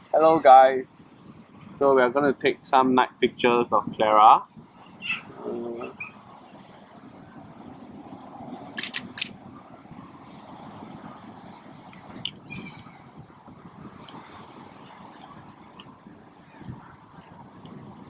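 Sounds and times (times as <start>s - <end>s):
camera shutter clicks: 8.8s - 9.3s.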